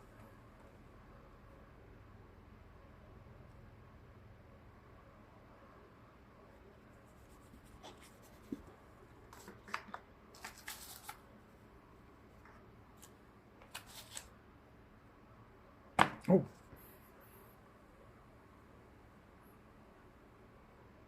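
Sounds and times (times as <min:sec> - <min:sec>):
cardboard and paper rustling: 0:09.3 - 0:11.2, 0:13.0 - 0:14.3.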